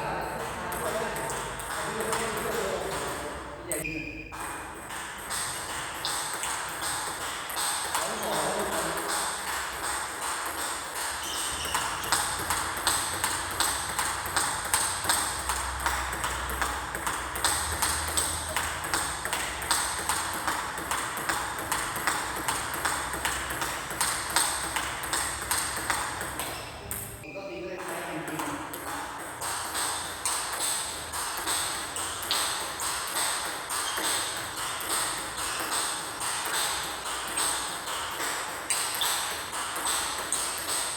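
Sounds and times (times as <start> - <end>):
table tennis ball clicks: 4.4 - 27.1, 27.8 - 40.9.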